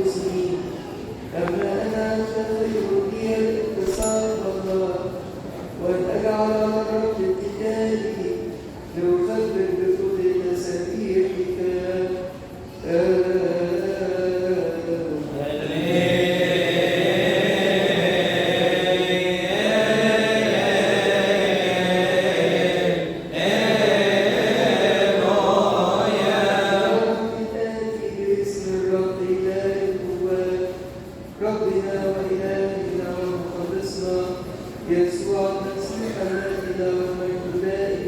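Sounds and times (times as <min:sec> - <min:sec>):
man chanting: 0:12.8 - 0:30.8.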